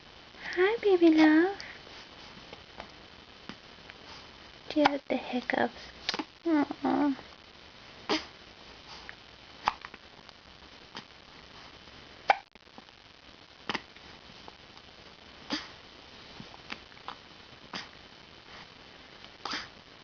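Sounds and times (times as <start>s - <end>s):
baby hiccuping: 8.1s - 8.3s, 15.5s - 15.7s, 19.4s - 19.7s.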